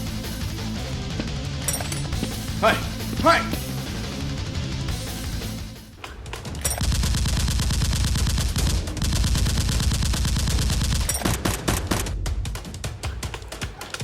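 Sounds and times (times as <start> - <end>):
separate gunshots: 6.1 - 14.0
automatic gunfire: 6.8 - 12.2.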